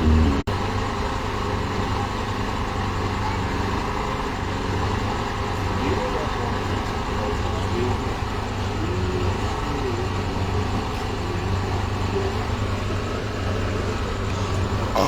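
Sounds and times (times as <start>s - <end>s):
steady low hum: 0.0s - 0.8s.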